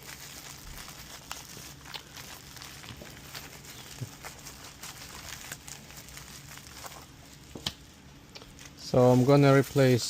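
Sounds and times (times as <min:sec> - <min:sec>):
low steady hum: 0:00.0 - 0:10.0
packaging rustling: 0:00.0 - 0:10.0.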